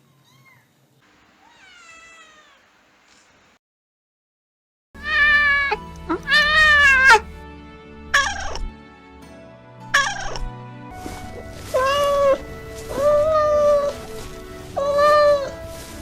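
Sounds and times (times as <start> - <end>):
cat meowing: 1.2 - 3.3, 5.0 - 7.3, 8.1 - 8.7, 9.9 - 10.5, 11.4 - 15.6
background music: 5.0 - 16.0.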